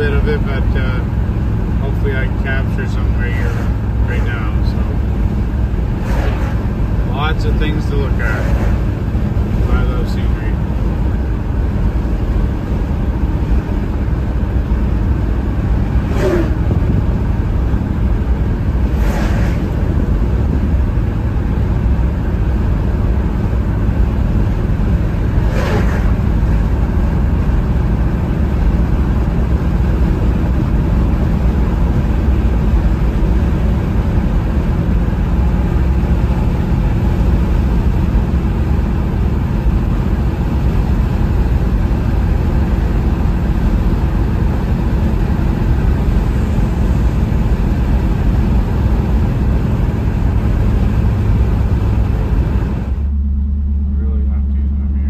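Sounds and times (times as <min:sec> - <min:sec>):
car engine and road noise: 0:00.0 - 0:55.0
short whooshes: 0:05.9 - 0:07.0, 0:08.2 - 0:09.0, 0:16.0 - 0:16.9, 0:18.8 - 0:20.0, 0:25.4 - 0:26.3.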